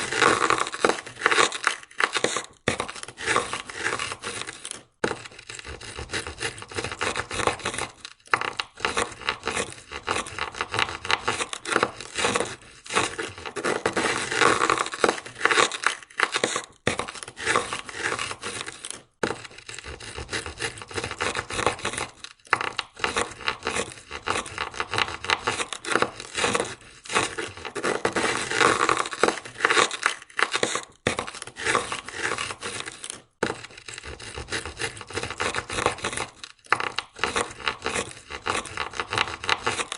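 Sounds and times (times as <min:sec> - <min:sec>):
ice scraper scraping car window: 0:00.0 - 0:39.9.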